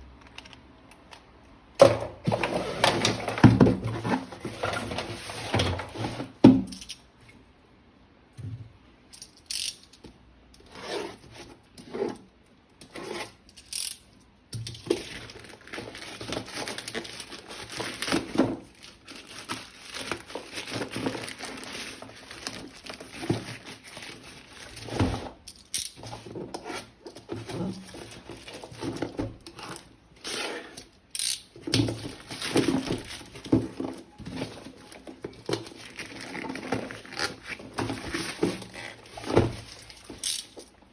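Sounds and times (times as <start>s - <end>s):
plastic crinkling and tearing: 14.8s - 25.0s, 31.6s - 40.3s.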